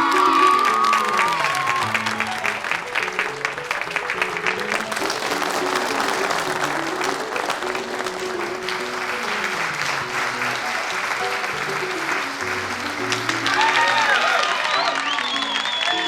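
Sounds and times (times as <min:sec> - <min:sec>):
cheer or whoop: 0:00.0 - 0:02.2, 0:13.4 - 0:16.0
crowd applauding: 0:00.0 - 0:16.0.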